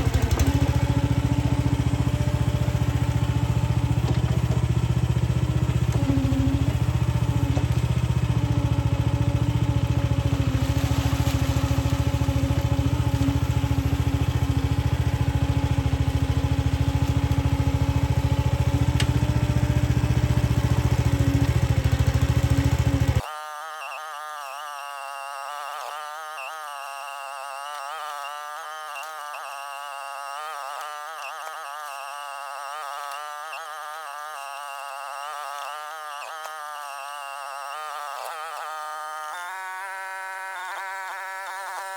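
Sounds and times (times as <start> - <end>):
excavator engine running: 0.0 - 24.4
hydraulic whine: 0.0 - 41.9.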